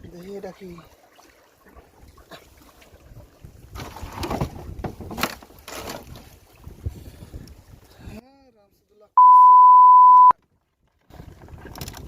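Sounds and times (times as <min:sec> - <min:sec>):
water splashing: 0:00.0 - 0:07.7.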